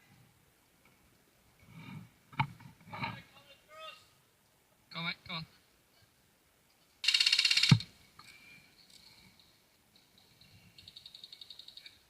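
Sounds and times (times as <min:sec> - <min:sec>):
airsoft gun rapid fire: 0:07.0 - 0:07.9.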